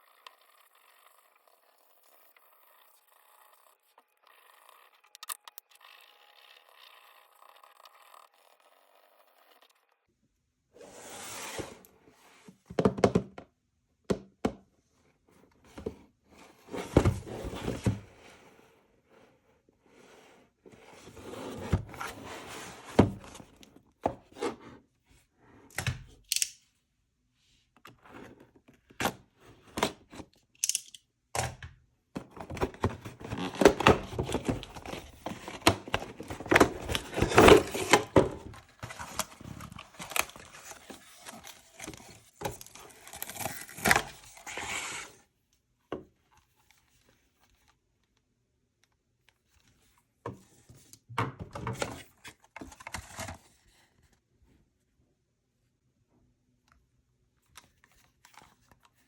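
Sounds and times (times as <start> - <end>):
packaging rustling and tearing: 32.4 - 45.0.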